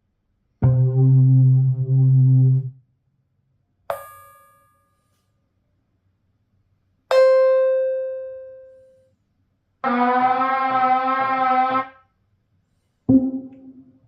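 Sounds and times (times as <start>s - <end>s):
brassy synth note: 9.8s - 12.0s
bell-like synth tone: 13.1s - 13.9s
short low synth note: 13.1s - 14.0s.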